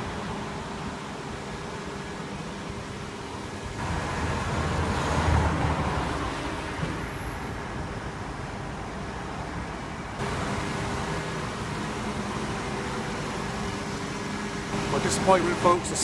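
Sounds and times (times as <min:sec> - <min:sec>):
traffic hum: 0:00.0 - 0:16.0.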